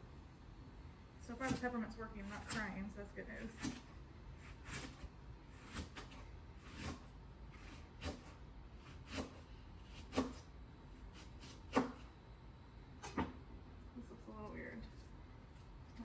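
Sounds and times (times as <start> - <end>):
knife slicing on cutting board: 3.4 - 12.1.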